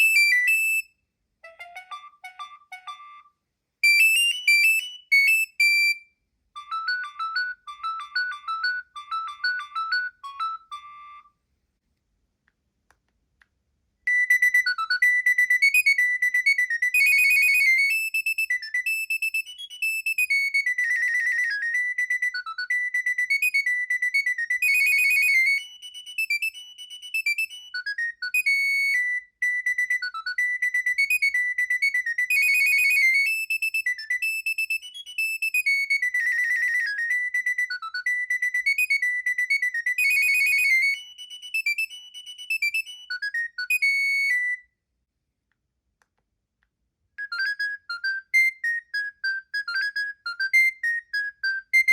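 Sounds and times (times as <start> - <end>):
polyphonic ringtone melodies: 1.4 - 6.0, 6.6 - 11.3, 19.0 - 44.6.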